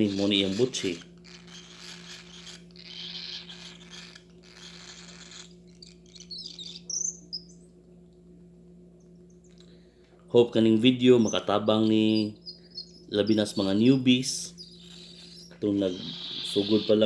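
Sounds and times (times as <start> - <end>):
baby cockatiel begging calls: 0.0 - 7.6, 11.1 - 17.0
cockatiel high chirp: 0.0 - 7.7, 11.2 - 17.0.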